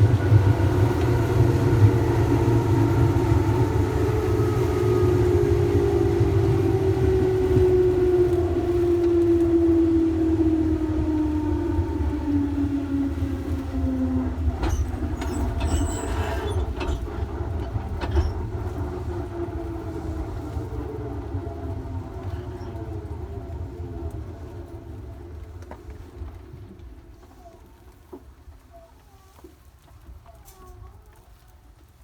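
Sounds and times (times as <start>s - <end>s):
train motors whining: 0.0s - 29.1s
train running rumble: 0.0s - 32.0s
rail-joint clicks: 14.4s - 19.7s.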